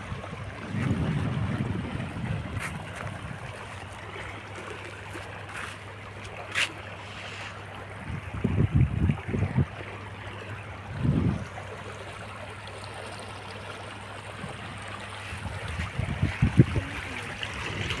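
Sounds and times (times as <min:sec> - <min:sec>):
wind buffeting microphone: 0:00.0 - 0:04.5, 0:08.0 - 0:09.9, 0:10.6 - 0:11.7, 0:14.4 - 0:18.0
floodwater rushing: 0:00.0 - 0:18.0.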